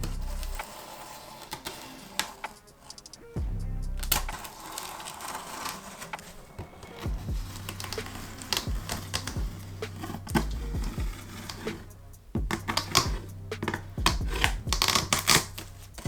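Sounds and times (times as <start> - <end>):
packaging clicks and rustles: 0.4 - 3.2, 4.1 - 11.8, 12.5 - 16.0.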